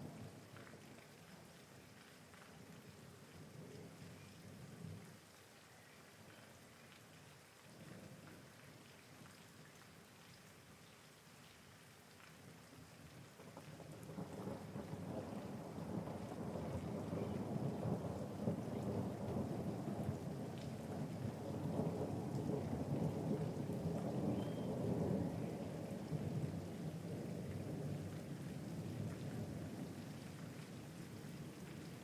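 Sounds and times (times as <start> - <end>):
steady rain: 0.0 - 32.0
rolling thunder rumble: 14.1 - 29.9.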